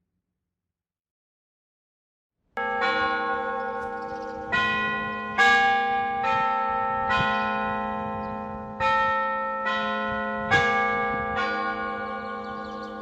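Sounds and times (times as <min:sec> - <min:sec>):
church bells ringing: 0:02.6 - 0:13.0.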